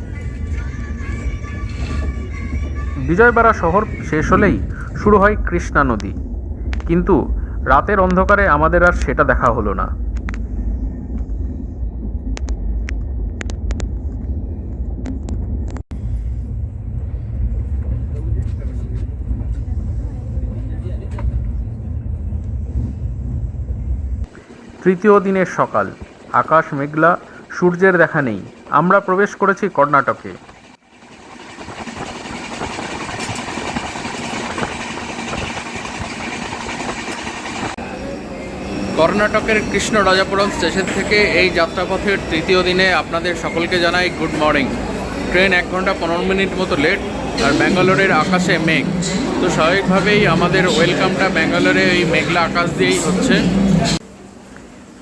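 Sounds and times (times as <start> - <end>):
steady rushing noise: 0.0 - 55.0
train rumbling: 0.0 - 55.0
train wheels clattering on rails: 29.9 - 37.8
sharp clicks and rattles: 30.2 - 37.8.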